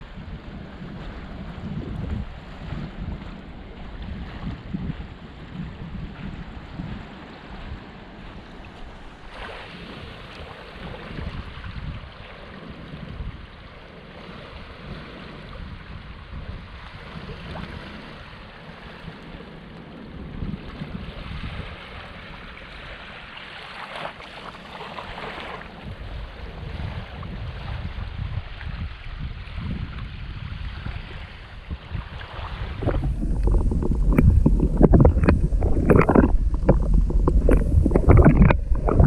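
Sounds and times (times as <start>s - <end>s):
wind buffeting microphone: 0.0s - 23.3s, 24.5s - 39.0s
sea waves washing on beach: 0.0s - 39.0s.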